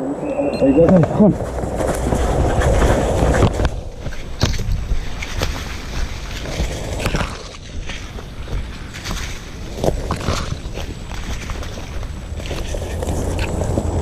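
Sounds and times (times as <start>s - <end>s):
wind rumble on microphone: 0.0s - 14.0s.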